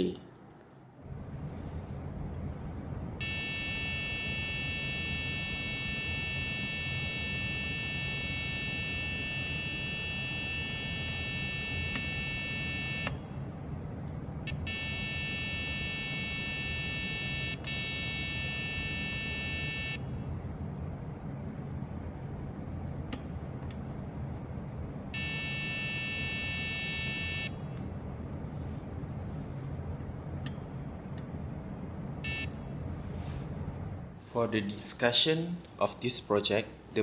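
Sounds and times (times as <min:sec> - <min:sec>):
buzzer high tone: 0:03.2 - 0:13.1, 0:14.5 - 0:20.1, 0:25.2 - 0:27.6, 0:32.2 - 0:32.6
click: 0:22.8 - 0:23.9, 0:30.4 - 0:31.3.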